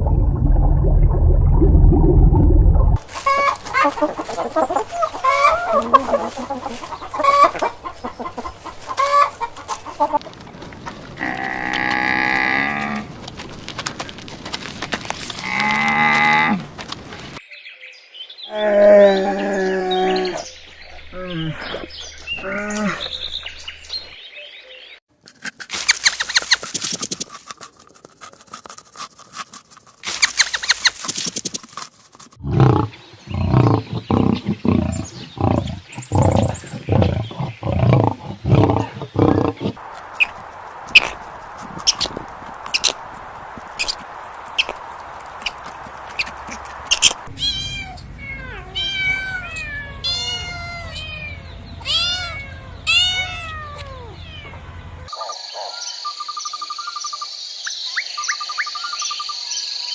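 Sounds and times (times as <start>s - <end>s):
falling chirping calls: 43.7s - 55.2s.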